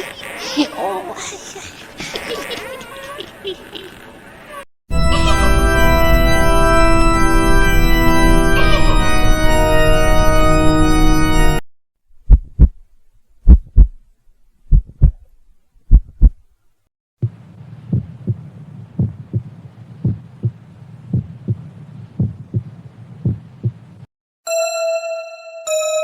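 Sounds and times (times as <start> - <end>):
sustained organ chord: 4.9 - 11.6
heartbeat thumps: 12.2 - 12.8, 13.4 - 14.0, 14.7 - 16.4, 17.2 - 24.0.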